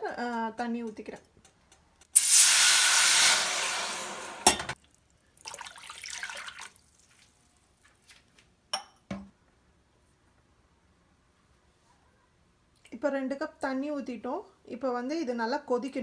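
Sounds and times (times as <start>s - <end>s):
water pouring into a pan: 2.2s - 4.7s, 5.4s - 7.4s.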